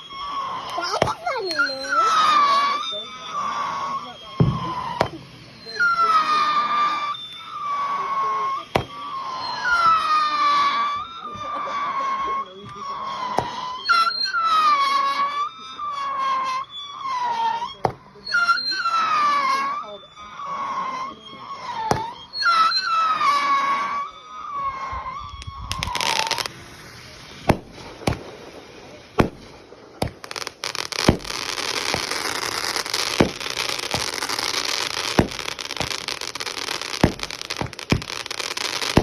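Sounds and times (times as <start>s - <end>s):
firework hiss: 0.0s - 12.2s, 25.4s - 39.0s
firework bangs: 0.0s - 39.0s
firework crackle: 0.0s - 39.0s
firework whistle: 0.0s - 39.0s.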